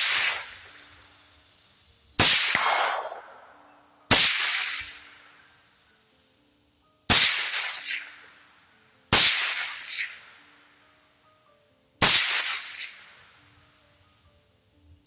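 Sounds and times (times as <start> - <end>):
suppressed rifle shots: 0.0 - 0.7, 2.2 - 3.5, 4.1 - 5.2, 7.1 - 8.3, 9.1 - 10.3, 12.0 - 13.2.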